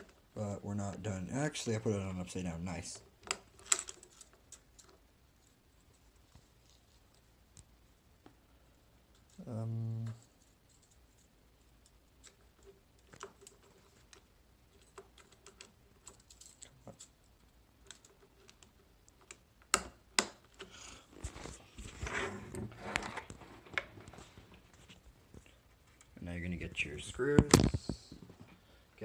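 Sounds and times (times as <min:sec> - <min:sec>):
sharp plastic snaps: 0:17.8 - 0:20.8.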